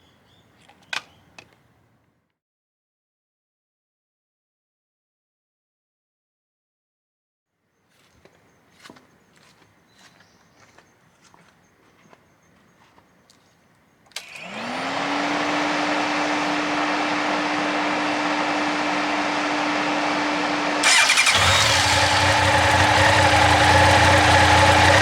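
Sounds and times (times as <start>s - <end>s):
click: 0.6s - 1.6s
motorcycle engine idling: 20.8s - 25.0s.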